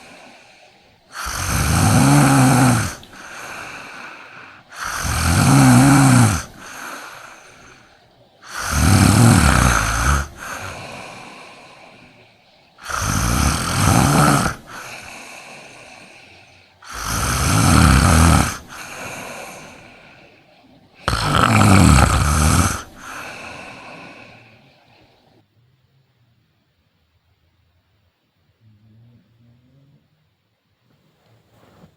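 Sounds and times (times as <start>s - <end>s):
man snoring loudly: 0.0s - 20.3s, 21.0s - 24.6s
soft breath: 0.0s - 25.4s, 30.9s - 31.9s.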